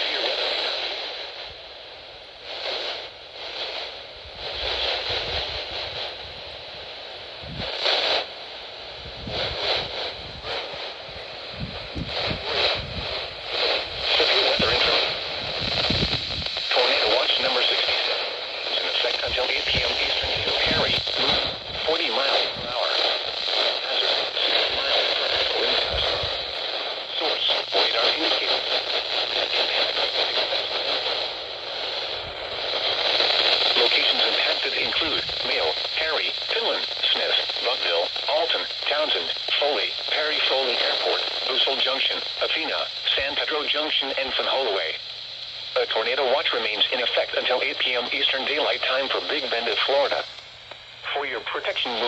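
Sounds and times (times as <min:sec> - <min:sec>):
faint radio voice: 0:00.0 - 0:01.0, 0:12.0 - 0:31.0, 0:33.0 - 0:45.0, 0:45.8 - 0:50.3, 0:51.0 - 0:52.0
radio static hiss: 0:00.0 - 0:52.0.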